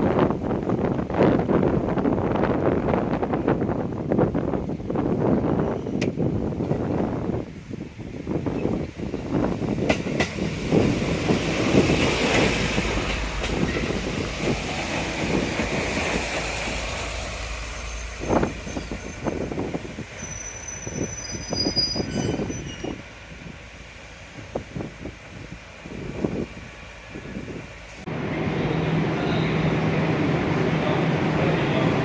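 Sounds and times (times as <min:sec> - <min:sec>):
train rumbling: 0:00.0 - 0:32.0
high wheel squeal: 0:17.6 - 0:23.0.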